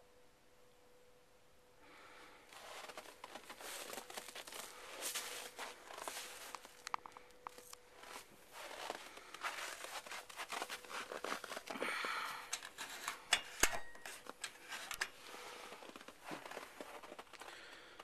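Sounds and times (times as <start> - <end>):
rustling and crackling: 2.5 - 18.0.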